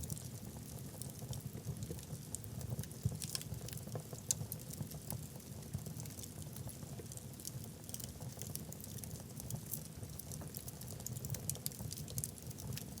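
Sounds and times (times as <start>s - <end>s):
logs crackling and popping: 2.8s - 5.2s, 7.4s - 13.0s.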